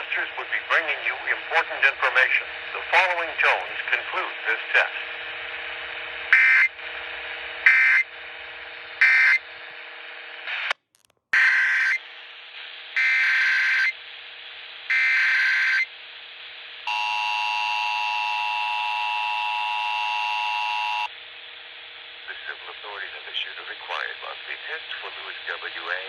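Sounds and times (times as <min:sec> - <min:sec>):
screechy data tone bursts: 0:13.0 - 0:14.0, 0:14.9 - 0:15.9, 0:16.9 - 0:21.1.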